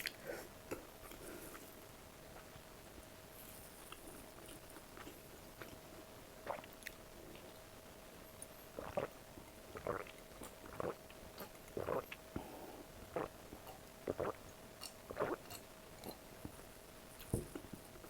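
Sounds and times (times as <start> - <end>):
faint steady hum: 0.0 - 18.0
person chewing food: 9.8 - 12.5, 13.1 - 16.6.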